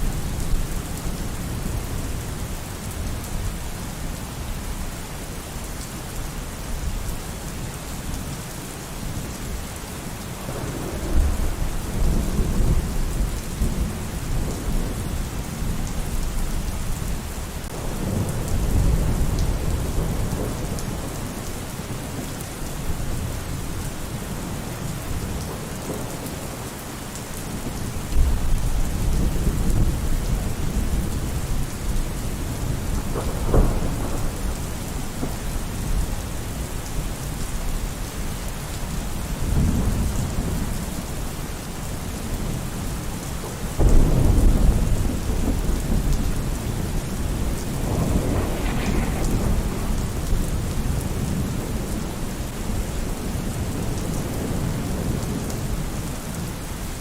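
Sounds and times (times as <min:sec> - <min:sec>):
heavy rain: 0:00.0 - 0:57.0
thunder rumbling: 0:10.3 - 0:22.2, 0:27.5 - 0:37.0, 0:43.4 - 0:55.8.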